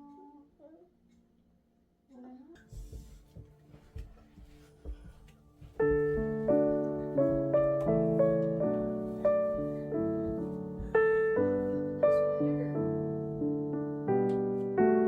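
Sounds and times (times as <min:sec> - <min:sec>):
faint knocks: 0:02.6 - 0:11.6
piano music: 0:03.1 - 0:15.0.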